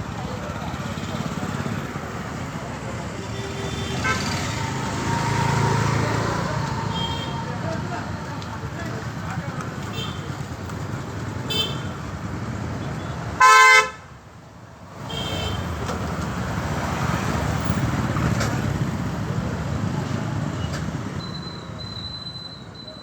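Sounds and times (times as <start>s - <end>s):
road traffic noise: 0.0s - 23.0s
vehicle horn honk: 3.2s - 4.4s, 6.9s - 7.4s, 13.4s - 14.0s.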